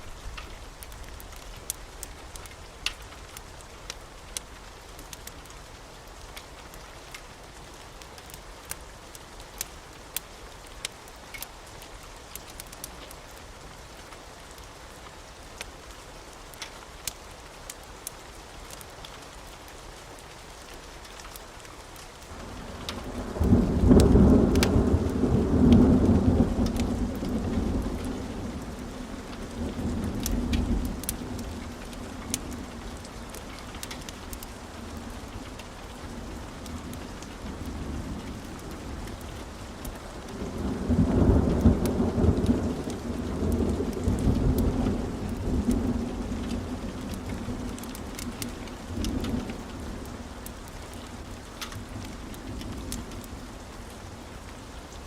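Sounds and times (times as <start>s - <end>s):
steady rain: 0.0s - 55.0s
low rolls of thunder: 22.3s - 39.3s, 40.1s - 50.3s.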